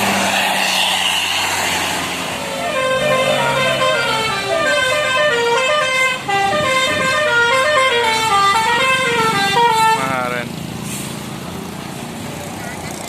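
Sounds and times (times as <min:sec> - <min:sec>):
multi-tone bus horn melody: 0:02.5 - 0:10.4.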